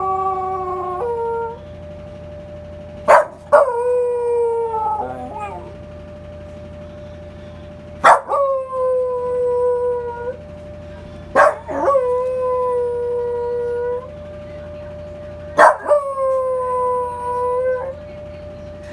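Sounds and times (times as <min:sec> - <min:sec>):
dog howling: 0:00.0 - 0:01.8, 0:03.1 - 0:06.0, 0:08.0 - 0:10.5, 0:11.3 - 0:14.2, 0:15.6 - 0:18.1
faint steady siren: 0:00.0 - 0:18.9
dog yelping: 0:03.1 - 0:03.9, 0:08.0 - 0:08.6, 0:11.4 - 0:12.5, 0:15.6 - 0:16.2.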